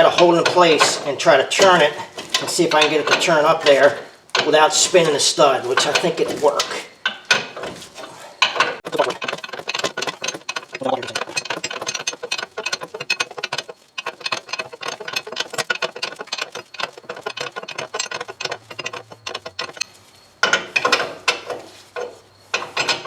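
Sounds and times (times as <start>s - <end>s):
hand ratchet clicking: 8.4s - 23.0s.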